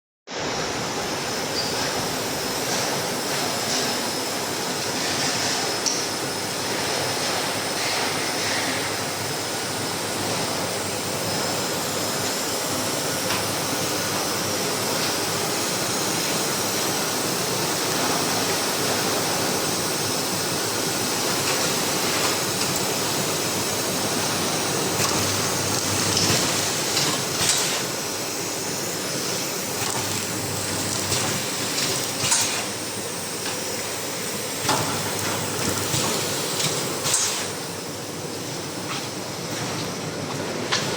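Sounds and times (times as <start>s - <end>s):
packing machine running: 0.5s - 40.9s.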